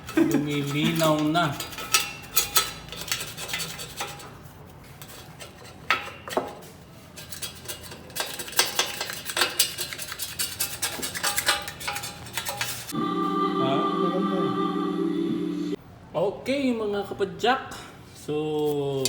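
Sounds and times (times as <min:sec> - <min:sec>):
clinks and scrapes on metal: 0:00.0 - 0:12.9.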